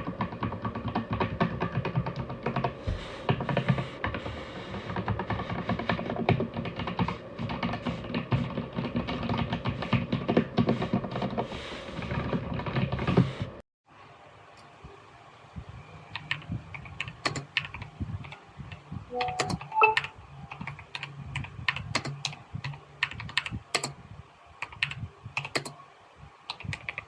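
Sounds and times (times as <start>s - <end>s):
mechanical keyboard typing: 0.0s - 3.8s, 4.9s - 11.4s, 12.0s - 13.3s, 16.1s - 18.4s, 19.1s - 23.9s, 24.6s - 25.8s, 26.5s - 27.0s
background music: 19.1s - 20.1s.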